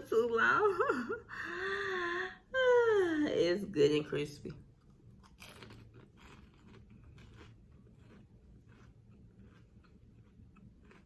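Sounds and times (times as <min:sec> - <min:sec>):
crunching and chewing waffle: 0:04.6 - 0:11.0.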